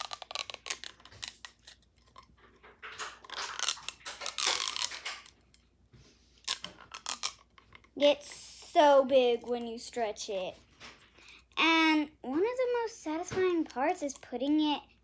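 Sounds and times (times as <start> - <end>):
plastic straw joints crackling: 0.0 - 5.6, 6.4 - 8.0.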